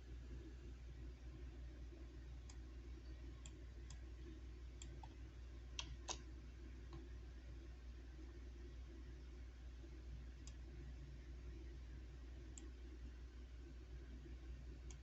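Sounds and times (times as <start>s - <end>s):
steady low hum: 0.0s - 15.0s
faint clicks: 4.8s - 6.3s, 10.4s - 10.6s.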